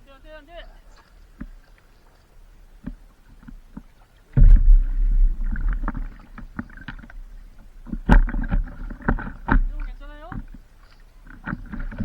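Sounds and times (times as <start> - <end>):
water sloshing and splashing: 0.0 - 12.0
knocks against paddleboard: 4.4 - 7.1, 7.9 - 10.6.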